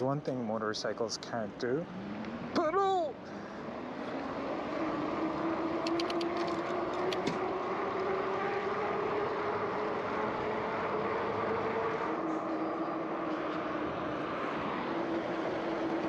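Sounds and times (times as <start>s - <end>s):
light clicks: 5.8s - 7.3s.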